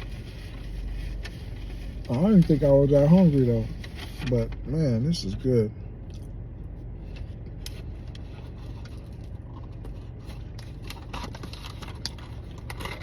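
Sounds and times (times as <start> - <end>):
car engine running: 0.0 - 13.0
person chewing: 6.0 - 6.4.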